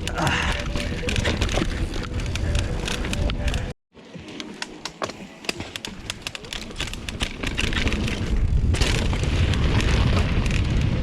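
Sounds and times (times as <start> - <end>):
tyres and wind rumble: 0.0 - 3.8, 5.8 - 11.0
bike rattling over dirt: 0.0 - 4.8, 5.4 - 11.0.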